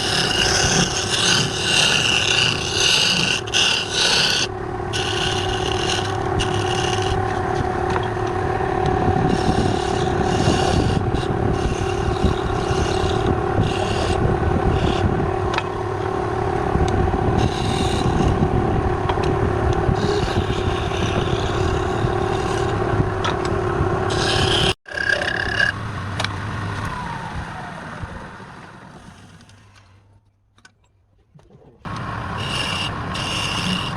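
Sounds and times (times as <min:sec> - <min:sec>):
turning tool scraping wood: 0:00.0 - 0:15.7, 0:17.2 - 0:18.5, 0:19.1 - 0:25.8, 0:32.3 - 0:33.9
wood lathe humming: 0:00.0 - 0:25.8, 0:31.9 - 0:33.9.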